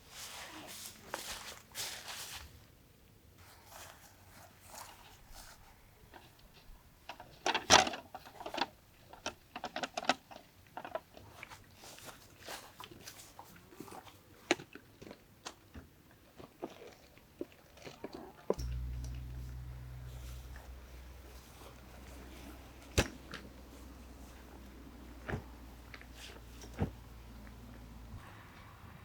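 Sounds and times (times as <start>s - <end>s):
low steady rumble: 18.6s - 28.4s.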